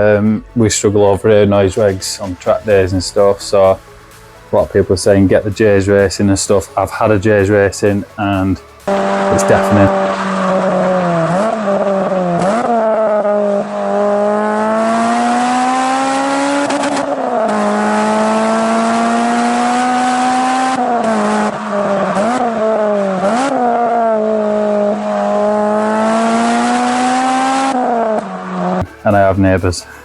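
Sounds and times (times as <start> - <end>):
racing car engine revving: 8.7 - 29.0.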